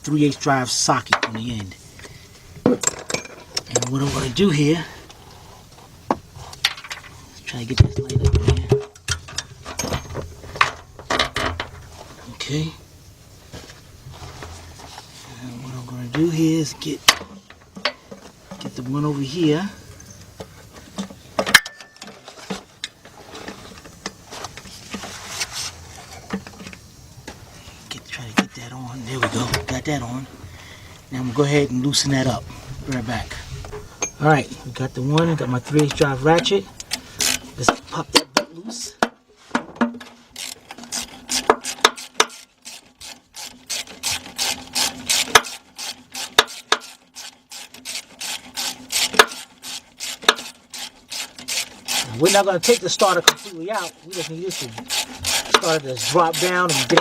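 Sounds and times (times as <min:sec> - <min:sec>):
faint steady hum: 0:00.0 - 0:57.0
sharp metal clink: 0:21.5 - 0:22.1
ratchet clicking: 0:40.4 - 0:57.0.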